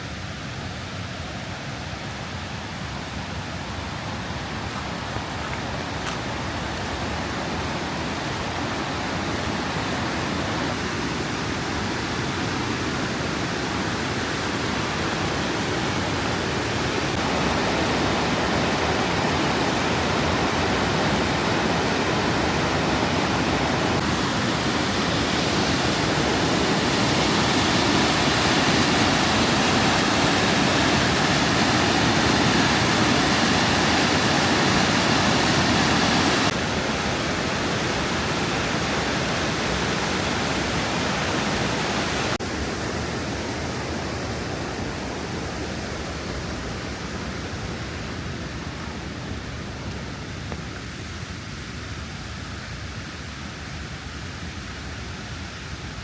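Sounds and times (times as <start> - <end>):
waterfall and creek rushing: 0.0 - 56.0.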